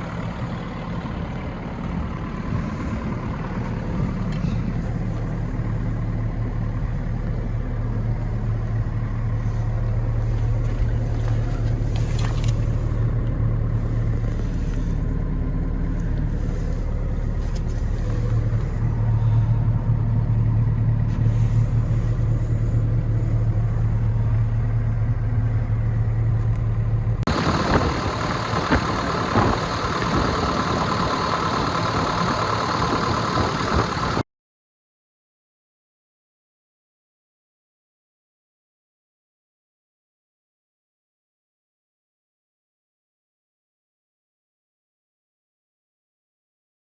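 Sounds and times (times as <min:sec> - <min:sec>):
excavator diesel engine running: 0:00.0 - 0:34.2.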